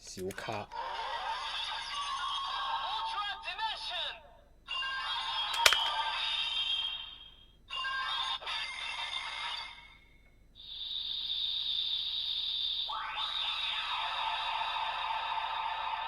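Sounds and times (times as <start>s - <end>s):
toy electronic sound bursts: 5.5s - 6.0s, 10.6s - 14.9s.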